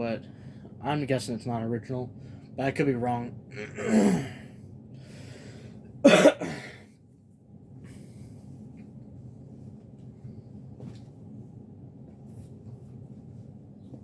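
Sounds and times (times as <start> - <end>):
ceiling fan whirring: 0.0 - 14.0
man coughing: 3.6 - 4.4, 6.0 - 6.9.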